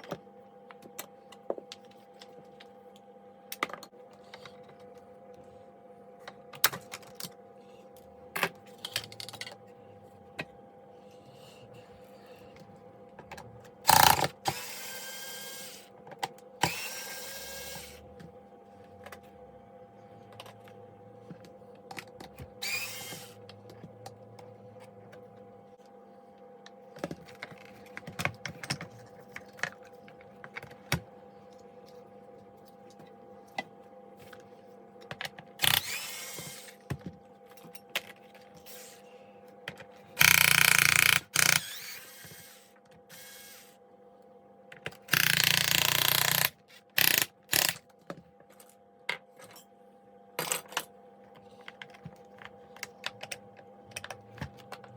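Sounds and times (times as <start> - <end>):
power screwdriver bursts: 13.9 - 15.8, 22.6 - 23.3, 35.6 - 36.8, 40.2 - 43.7
screws and plastic parts clicking: 13.9 - 15.8, 35.6 - 36.8, 40.2 - 43.7, 44.9 - 47.9.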